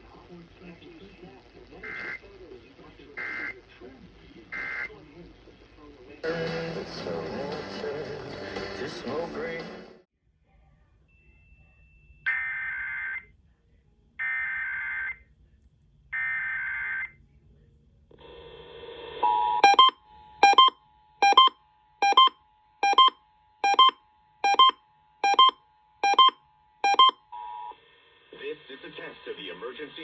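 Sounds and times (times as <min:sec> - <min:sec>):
data-modem screech: 0:19.6 - 0:27.1
pulsing two-tone attention signal: 0:19.6 - 0:27.2.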